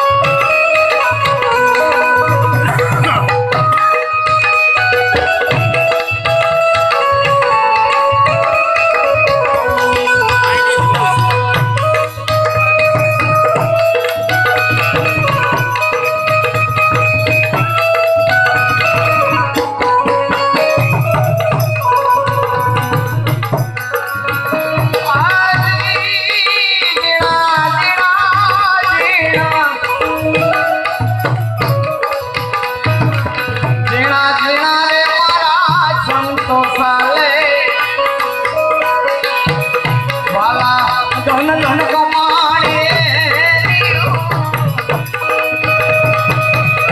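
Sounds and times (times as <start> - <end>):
melody of held notes: 0.0 - 25.4
wavering higher melody: 0.0 - 26.4, 29.3 - 34.9
tabla rhythm: 0.0 - 46.9.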